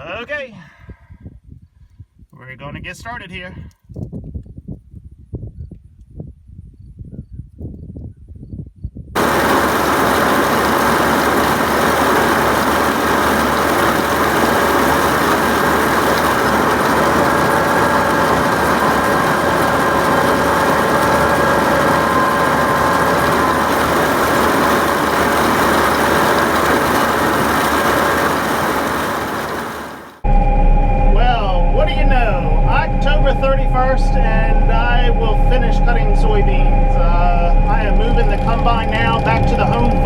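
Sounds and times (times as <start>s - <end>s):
combine harvester engine running: 9.2s - 40.0s.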